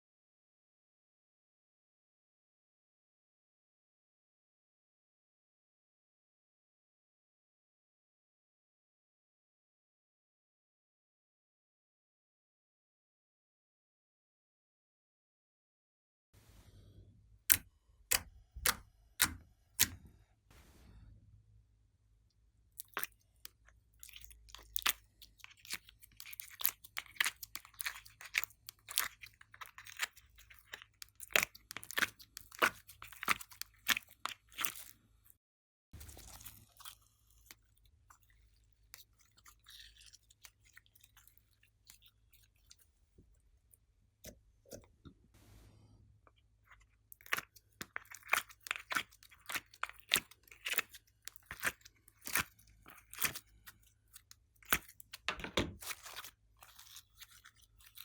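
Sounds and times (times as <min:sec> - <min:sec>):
slime squishing and crackling: 0:17.5 - 0:20.0, 0:22.8 - 0:35.0, 0:36.0 - 0:42.8, 0:47.1 - 0:58.0.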